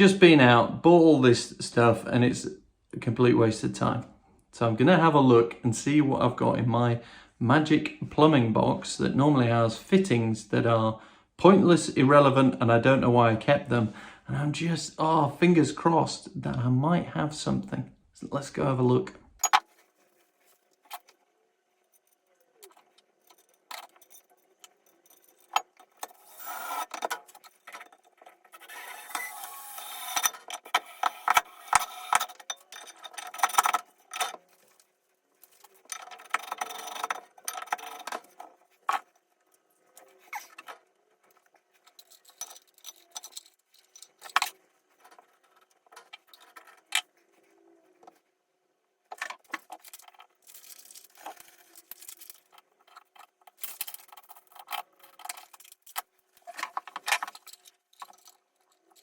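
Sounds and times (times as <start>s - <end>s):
metal and plastic parts rattling: 19.3s - 48.3s, 49.0s - 59.0s.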